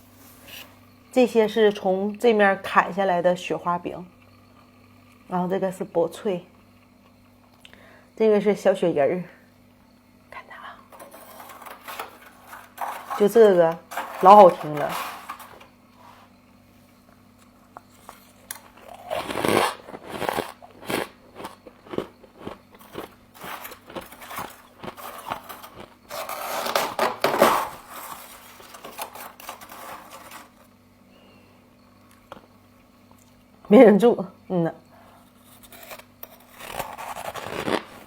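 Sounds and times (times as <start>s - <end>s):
faint low hum: 0.0s - 38.0s
frost crunching while chewed: 17.4s - 30.6s, 35.2s - 38.0s.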